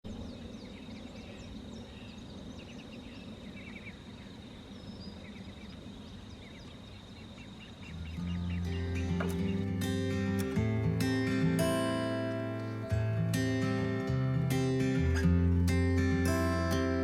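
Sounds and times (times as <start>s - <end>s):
small birds chirping: 0.0s - 17.0s
acoustic guitar music: 7.9s - 17.0s.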